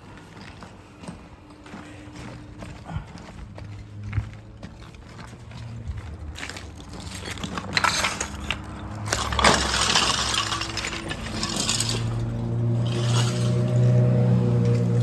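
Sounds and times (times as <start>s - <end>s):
tile pieces breaking and falling: 9.1s - 12.0s.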